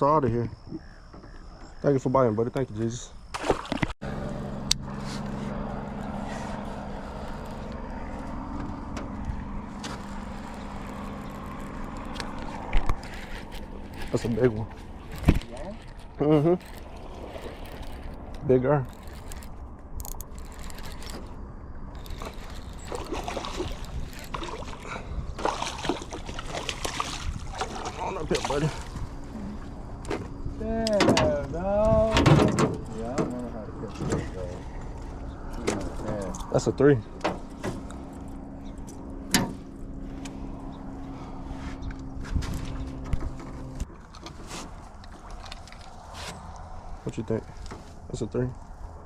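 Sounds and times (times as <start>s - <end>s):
water against boat: 2.6s - 49.0s
wind rumbling on microphone: 4.5s - 49.0s
small motor humming: 16.4s - 25.0s.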